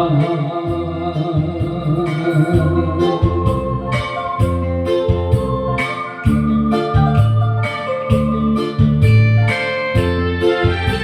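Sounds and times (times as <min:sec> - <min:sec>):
bass notes: 0:00.0 - 0:11.0
keyboard chords: 0:00.0 - 0:11.0
steady drum beat: 0:00.0 - 0:11.0.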